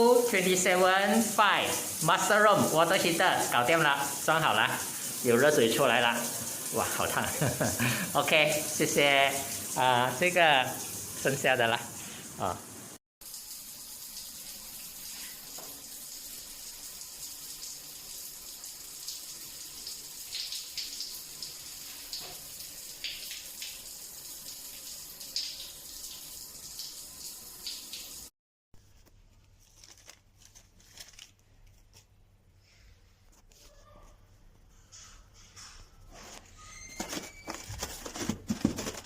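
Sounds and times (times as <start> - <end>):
hot water running and splashing: 0.0 - 28.3, 36.8 - 39.0.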